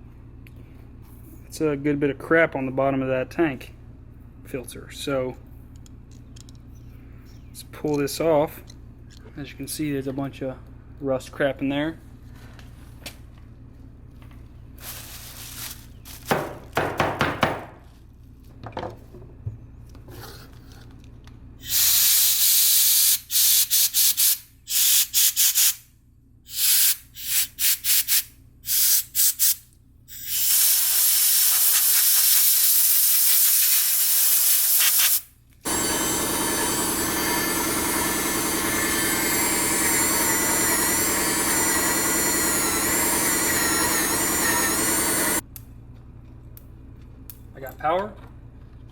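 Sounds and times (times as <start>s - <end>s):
spray hissing bursts: 26.5s - 45.4s.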